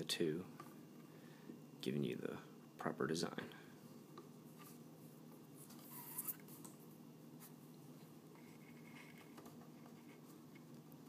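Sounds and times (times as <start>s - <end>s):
low steady hum: 0.0s - 11.0s
cord rustling and scraping: 5.6s - 6.8s, 7.4s - 10.8s.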